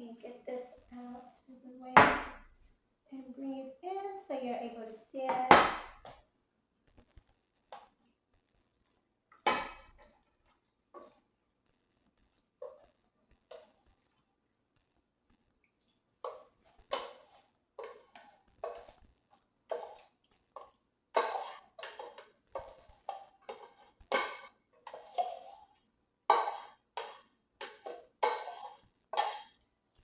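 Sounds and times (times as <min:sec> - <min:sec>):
kitchenware knocks and clinks: 0:02.0 - 0:02.5, 0:05.3 - 0:06.2, 0:09.4 - 0:10.1, 0:21.2 - 0:25.6, 0:26.3 - 0:29.6.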